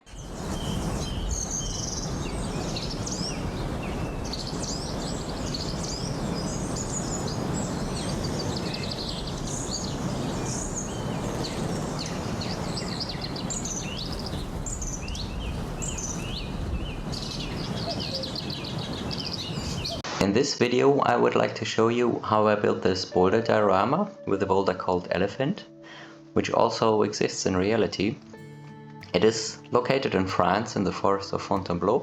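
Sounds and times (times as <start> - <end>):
small birds chirping: 0.0 - 20.0
steady rushing noise: 0.0 - 20.2.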